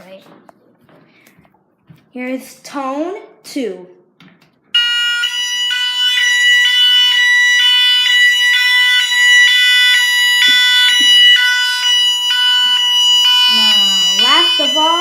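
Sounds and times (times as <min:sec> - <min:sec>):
two-pitch electronic fire alarm: 0:04.8 - 0:15.0.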